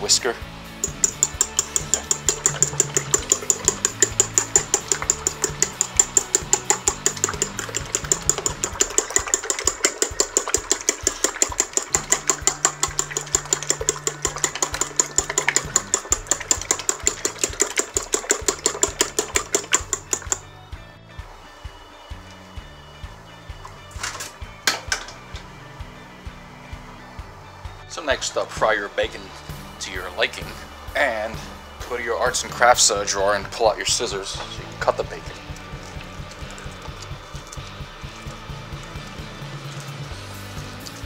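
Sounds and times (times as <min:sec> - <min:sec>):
fork clinking against bowl: 0:00.8 - 0:20.4.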